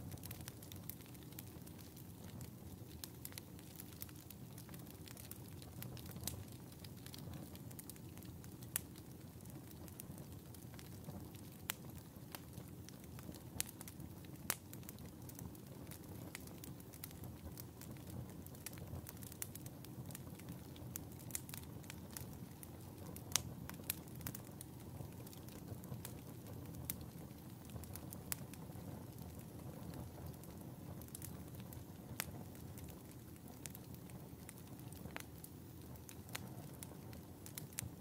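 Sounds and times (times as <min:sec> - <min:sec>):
wood fire crackling and popping: 0:00.0 - 0:38.0
flames rushing: 0:25.3 - 0:37.9.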